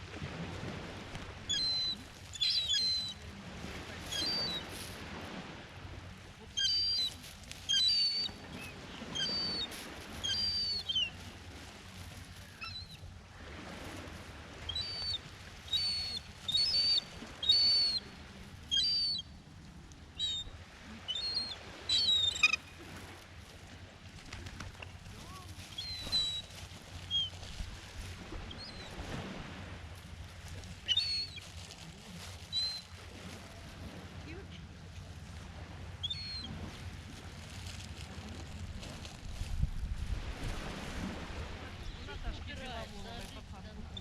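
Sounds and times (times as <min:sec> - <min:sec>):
birds chirping: 0:01.5 - 0:03.2, 0:06.6 - 0:11.2, 0:14.7 - 0:19.4, 0:20.2 - 0:22.8, 0:25.7 - 0:27.4, 0:30.8 - 0:31.5.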